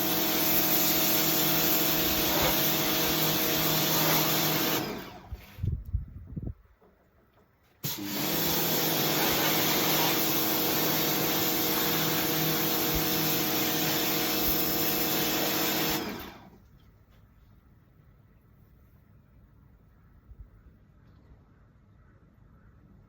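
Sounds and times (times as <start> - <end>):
pressure washer motor and pump: 0.0 - 5.6, 7.8 - 16.6.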